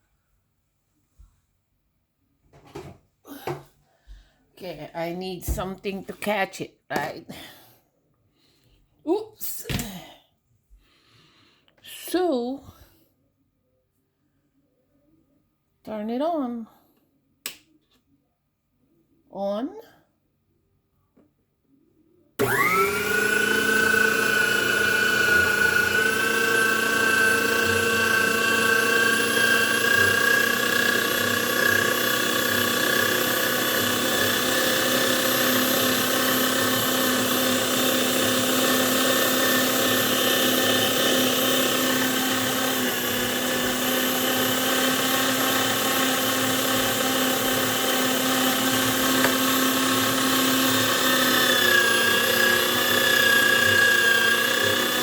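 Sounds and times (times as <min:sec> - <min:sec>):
electric meat grinder motor whine: 0:22.4 - 0:55.0.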